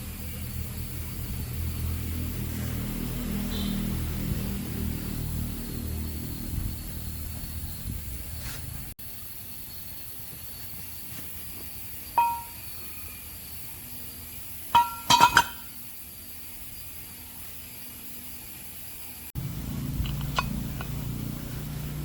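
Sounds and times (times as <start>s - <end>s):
metal tools clinking: 12.2s - 12.7s, 14.8s - 15.7s.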